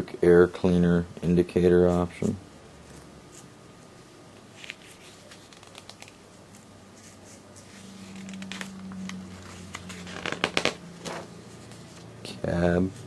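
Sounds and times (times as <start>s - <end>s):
low steady hum: 0.0s - 13.0s
paper rustling and crackling: 4.5s - 12.1s.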